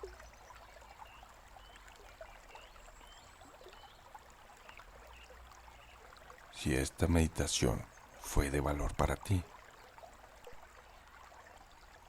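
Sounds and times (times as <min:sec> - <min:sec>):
faint bird chirps: 0:00.0 - 0:06.1
small stream babbling: 0:00.0 - 0:12.0.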